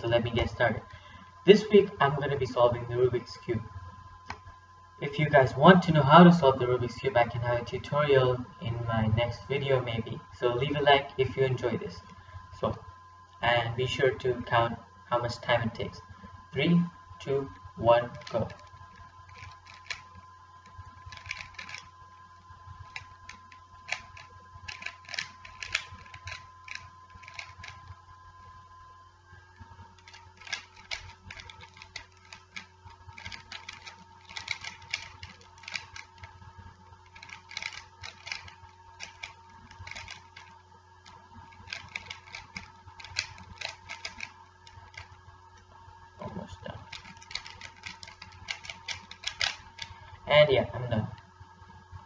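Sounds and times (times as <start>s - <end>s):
puzzle cube clicking: 18.1s - 21.9s, 22.8s - 27.9s, 30.0s - 36.3s, 37.1s - 45.2s, 46.8s - 50.0s.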